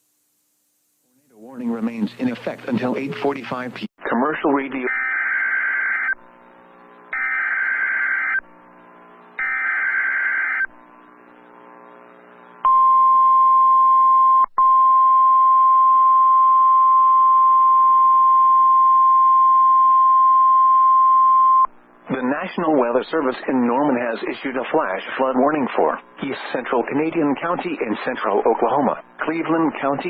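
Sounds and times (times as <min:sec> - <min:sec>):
buzzing digital data bursts: 0:07.1 - 0:08.4, 0:09.4 - 0:12.4.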